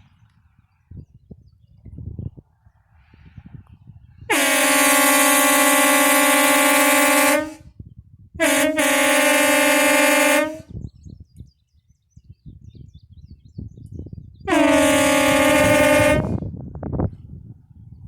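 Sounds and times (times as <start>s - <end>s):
air horn chord blasts: 4.3s - 7.6s, 8.4s - 10.7s, 14.5s - 16.4s.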